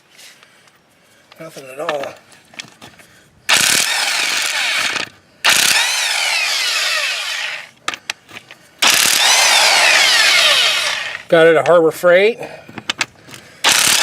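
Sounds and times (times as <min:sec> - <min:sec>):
impact wrench whining: 0:03.5 - 0:11.3, 0:12.8 - 0:14.0
sharp clicks: 0:13.7 - 0:14.0.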